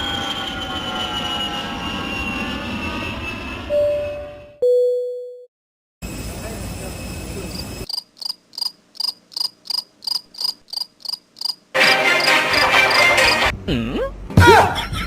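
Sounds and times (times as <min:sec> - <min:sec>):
cricket chirping: 0:06.0 - 0:13.4.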